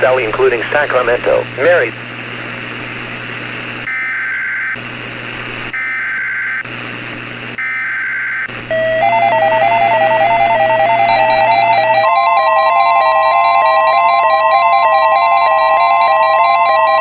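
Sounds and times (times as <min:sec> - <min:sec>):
radio hiss: 0:00.0 - 0:02.1
warbling digital data tone: 0:08.7 - 0:16.8
synthesized beeping melody: 0:08.7 - 0:17.0.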